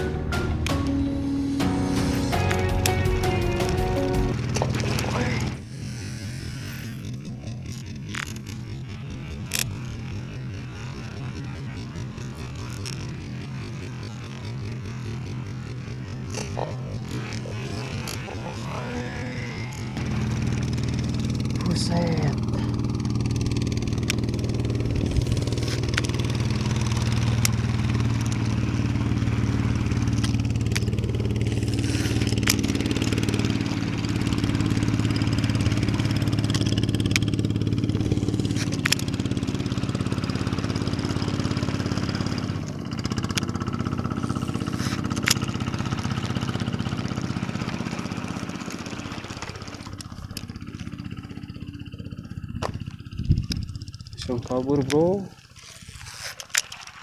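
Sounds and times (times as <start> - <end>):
small engine running: 0.0 - 57.0
sharp clicks: 23.2 - 39.7, 41.6 - 46.2.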